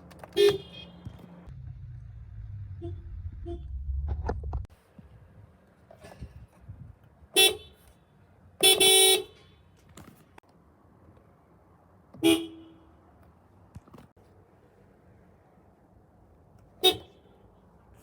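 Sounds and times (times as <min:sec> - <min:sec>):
car horn honks: 0:00.3 - 0:01.2, 0:02.7 - 0:03.8, 0:07.4 - 0:07.8, 0:08.6 - 0:09.6, 0:12.2 - 0:12.9, 0:16.8 - 0:17.2.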